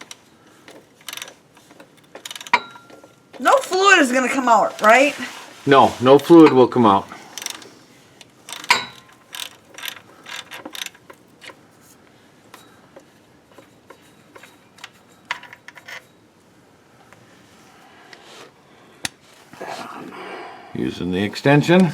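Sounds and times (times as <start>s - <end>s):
socket ratchet clicking: 8.5s - 11.1s.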